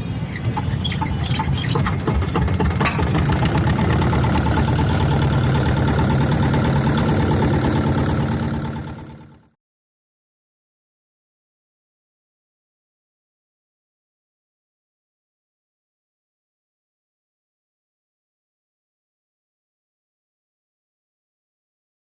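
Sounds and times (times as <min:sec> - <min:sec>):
rattling clicks: 0:00.4 - 0:05.3.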